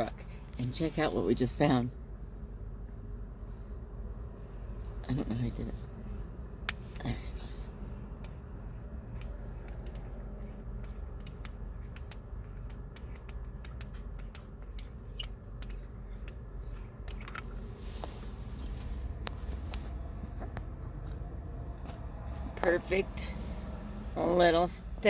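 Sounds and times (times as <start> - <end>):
low steady rumble: 0.0 - 25.0
small metallic clicks and rattles: 8.2 - 17.7.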